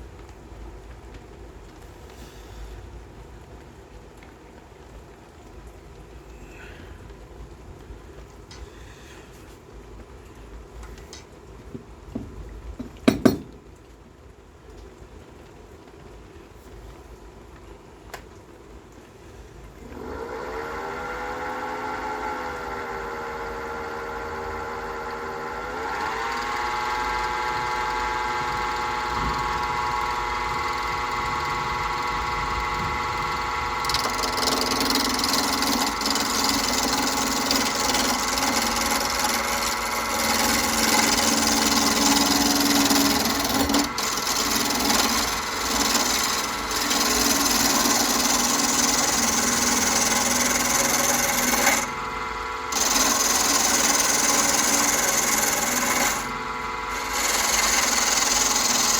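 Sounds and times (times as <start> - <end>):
lathe motor whine: 19.8 - 58.9
rasping of wood being turned: 25.8 - 58.9.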